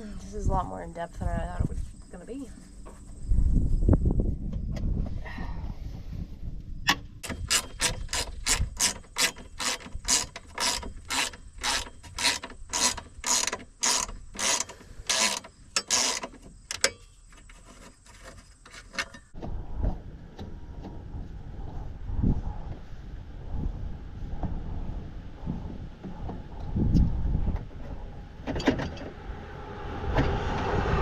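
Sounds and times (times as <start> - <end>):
ratchet wrench clicking: 7.2 - 17.0.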